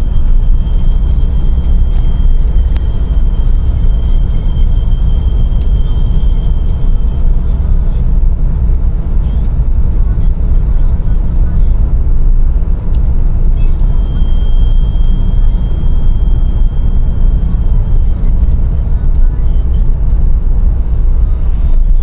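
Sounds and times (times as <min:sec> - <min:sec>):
high-pitched engine whistle: 0:00.0 - 0:08.0, 0:13.6 - 0:18.8
car engine rumbling: 0:00.0 - 0:22.0.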